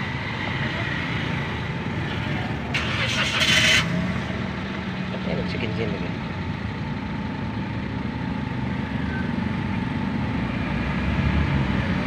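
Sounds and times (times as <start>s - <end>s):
car engine idling: 1.6s - 9.8s.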